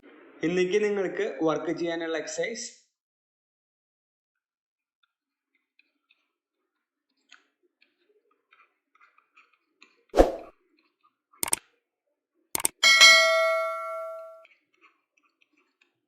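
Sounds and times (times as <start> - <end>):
sharp clicks: 12.6 - 12.8
bell-like ding: 12.8 - 14.4.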